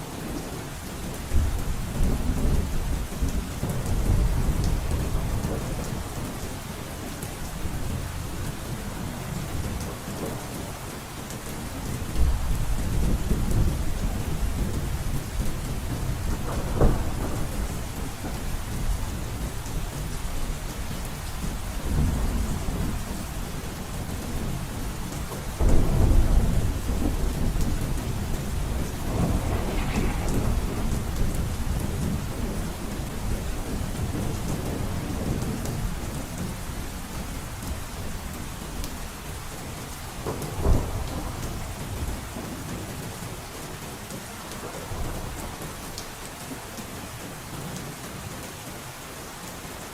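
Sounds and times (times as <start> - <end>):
heavy rain on a roof: 0.0 - 49.9
thunder rumbling: 1.3 - 6.7, 11.7 - 39.5, 40.2 - 42.7.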